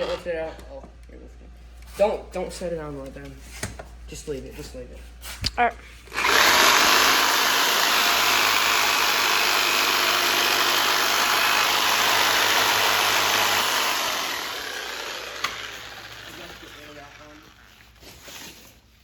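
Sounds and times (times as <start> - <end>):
power tool motor hissing: 6.1 - 17.7.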